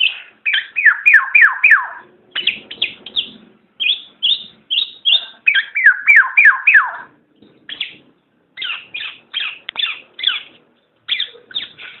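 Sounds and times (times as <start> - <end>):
oriole calling: 0.0 - 8.0.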